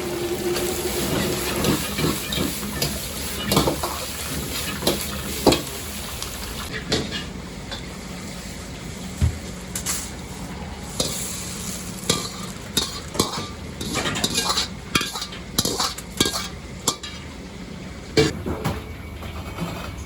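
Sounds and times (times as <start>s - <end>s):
frying sizzle: 0.0s - 18.3s
metal ladle scraping a wok: 10.9s - 17.2s.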